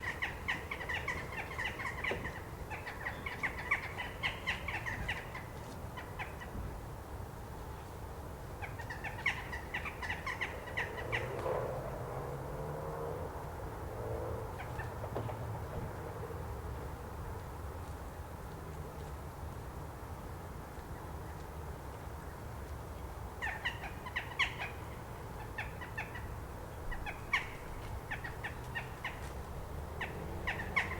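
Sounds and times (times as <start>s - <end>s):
jackdaws calling: 0.0s - 5.4s, 27.0s - 30.9s.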